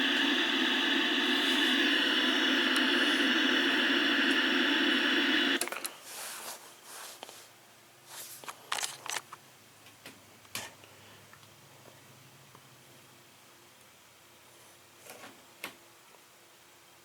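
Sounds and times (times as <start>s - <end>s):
tv static hiss: 0.0s - 5.7s.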